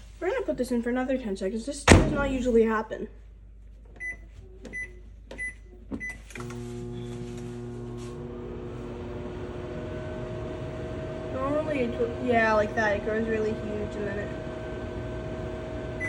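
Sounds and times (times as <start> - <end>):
microwave keypad beeping: 4.0 - 6.3
microwave oven humming: 4.7 - 16.0.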